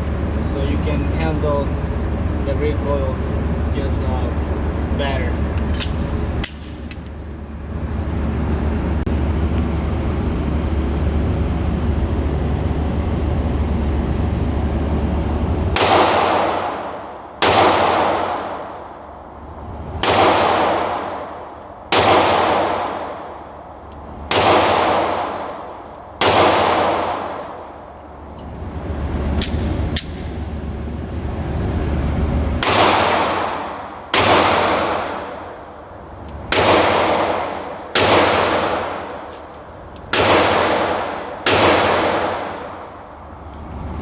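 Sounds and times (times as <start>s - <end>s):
steady rumbling noise: 0.0s - 44.0s
pistol shots echoing: 15.8s - 18.8s, 20.0s - 23.4s, 24.2s - 27.7s, 32.6s - 35.7s, 36.5s - 39.3s, 40.0s - 43.0s.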